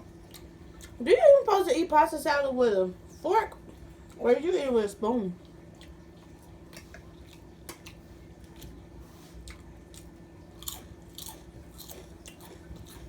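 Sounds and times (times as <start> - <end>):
person chewing food: 0.0 - 1.0, 5.4 - 13.0.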